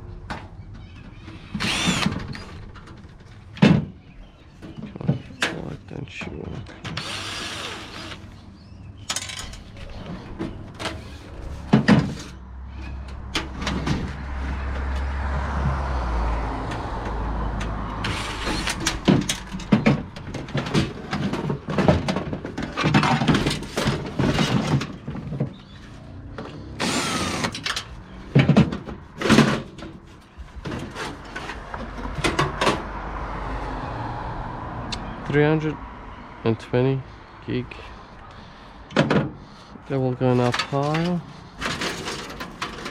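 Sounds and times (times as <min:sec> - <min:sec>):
sheet metal clanks and rattles: 0:17.6 - 0:25.8, 0:27.5 - 0:32.9, 0:40.2 - 0:42.9.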